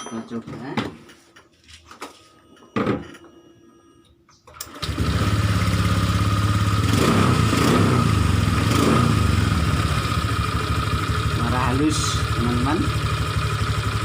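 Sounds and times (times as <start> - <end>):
scooter engine starting and idling: 4.5 - 14.0.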